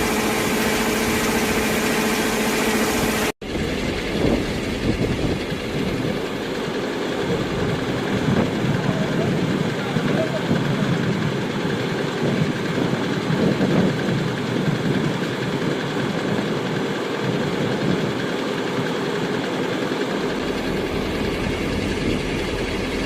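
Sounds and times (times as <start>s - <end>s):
combine harvester running: 0.0s - 23.0s
deep rumble: 3.4s - 11.5s, 20.2s - 23.0s.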